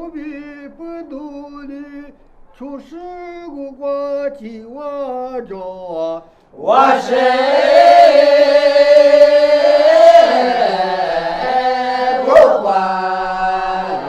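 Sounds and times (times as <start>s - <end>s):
unaccompanied choir singing: 6.6s - 14.0s.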